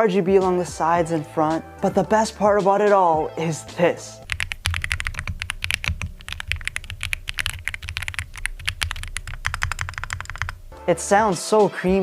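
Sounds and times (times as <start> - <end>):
fast typing on mechanical keyboard: 4.3 - 10.6.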